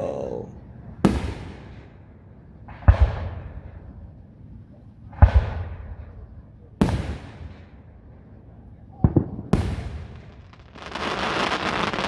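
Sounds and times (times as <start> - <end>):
fireworks booming: 9.0 - 12.0.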